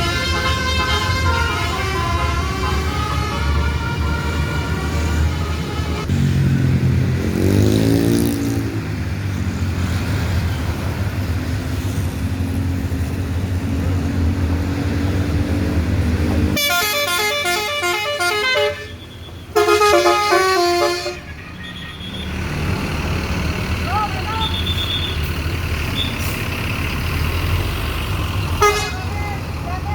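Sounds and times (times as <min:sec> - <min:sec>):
musical vehicle horn tune: 0:00.0 - 0:06.0, 0:16.6 - 0:22.4, 0:28.6 - 0:29.2.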